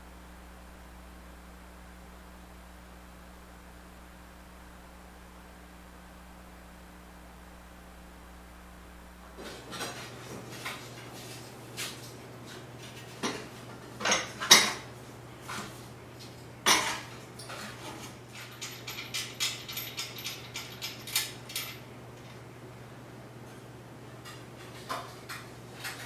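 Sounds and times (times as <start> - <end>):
metal tools clinking: 16.7 - 21.8.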